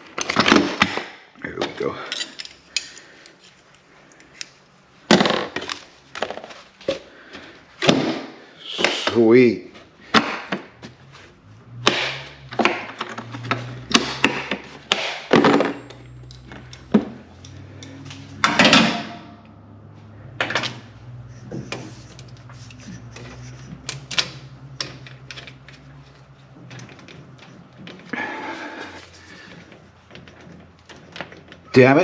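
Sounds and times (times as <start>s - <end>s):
hand tools clicking and knocking: 0.0s - 8.2s, 11.7s - 19.2s, 20.4s - 32.0s
hose fittings being handled: 1.6s - 4.6s, 12.2s - 18.8s, 20.4s - 32.0s
metal scrape: 20.9s - 26.2s.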